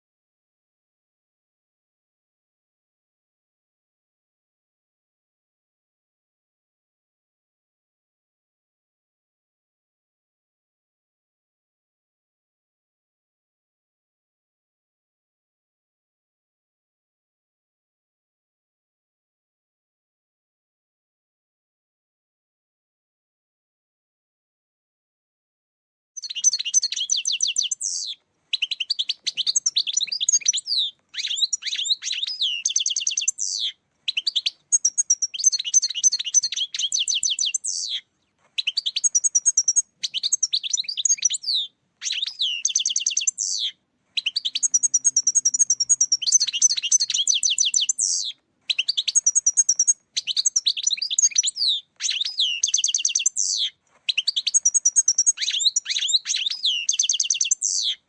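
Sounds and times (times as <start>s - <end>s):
goldfinch song: 26.2s - 58.0s.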